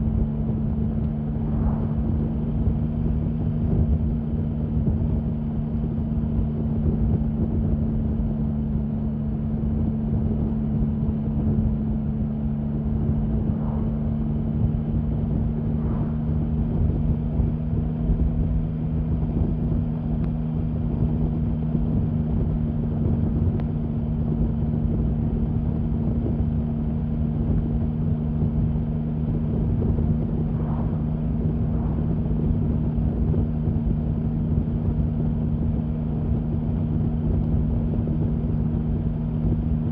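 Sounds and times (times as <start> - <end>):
motorcycle engine running steadily: 0.0 - 39.9
wind noise on microphone: 0.0 - 39.9.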